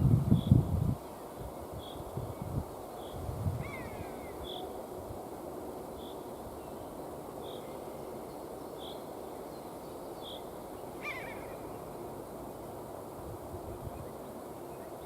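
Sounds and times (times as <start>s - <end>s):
forest ambience hiss: 0.0s - 15.0s.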